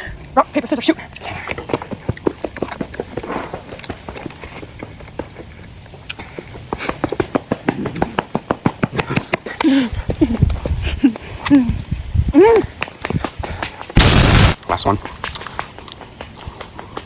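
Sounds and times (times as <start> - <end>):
wet chewing smacks: 1.1 - 4.7.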